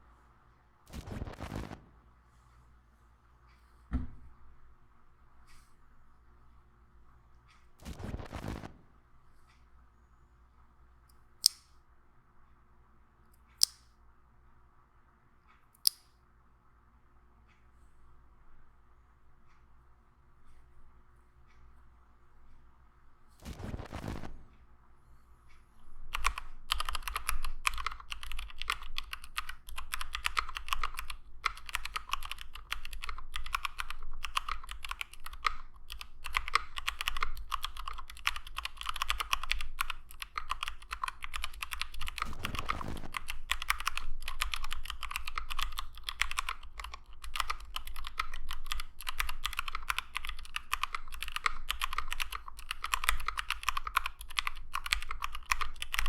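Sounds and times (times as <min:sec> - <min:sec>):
fast mechanical keyboard typing: 0:00.9 - 0:01.8, 0:07.8 - 0:08.8, 0:23.4 - 0:24.5, 0:26.0 - 0:56.0.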